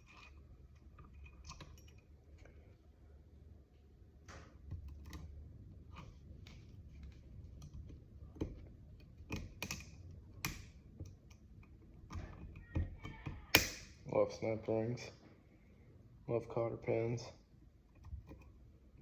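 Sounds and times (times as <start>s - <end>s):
small metal clicks and taps: 7.6s - 13.8s.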